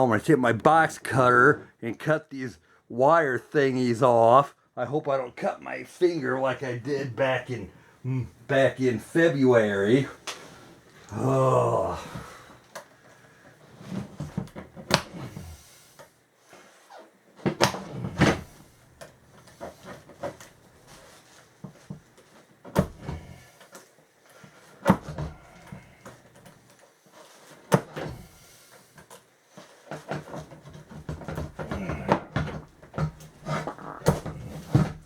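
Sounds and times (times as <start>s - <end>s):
chair parts clicking and knocking: 12.2s - 15.5s, 17.4s - 23.9s, 24.5s - 35.0s.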